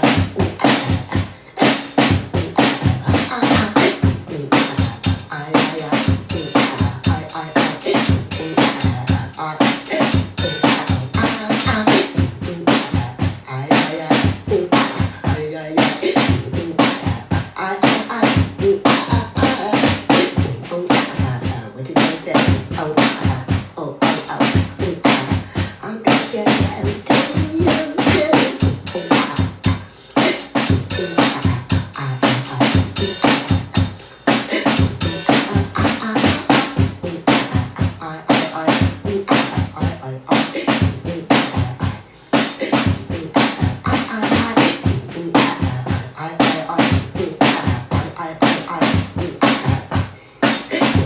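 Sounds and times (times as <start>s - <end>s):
drum beat: 0.0s - 51.0s.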